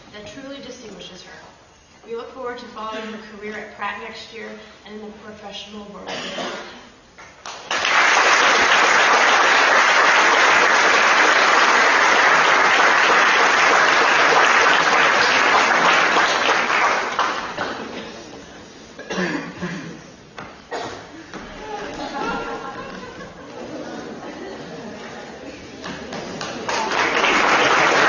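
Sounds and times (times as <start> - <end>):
audience applauding: 7.4 - 18.0, 25.8 - 28.0.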